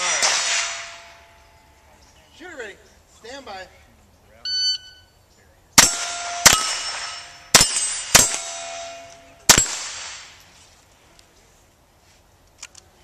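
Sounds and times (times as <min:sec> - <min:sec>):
rifle shots: 0:00.0 - 0:01.2, 0:05.8 - 0:08.9, 0:09.5 - 0:10.4
steel target plate ringing: 0:00.0 - 0:02.0, 0:05.8 - 0:09.8.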